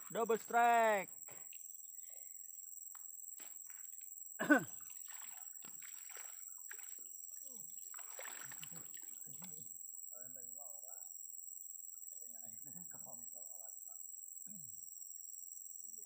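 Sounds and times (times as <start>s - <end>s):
crickets chirring: 0.0s - 16.0s
faint water splashes and knocks: 4.6s - 9.6s.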